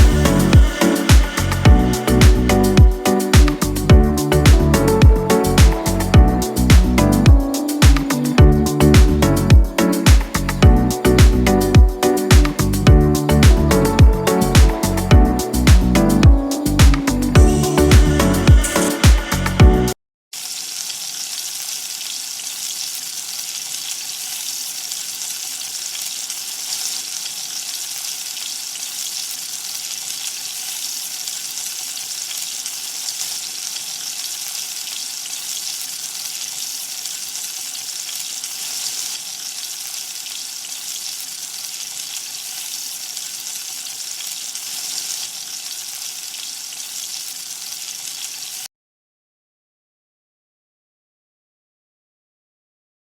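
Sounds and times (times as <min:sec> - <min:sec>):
food sizzling in hot oil: 0:00.0 - 0:03.9, 0:07.5 - 0:10.6, 0:20.4 - 0:48.7.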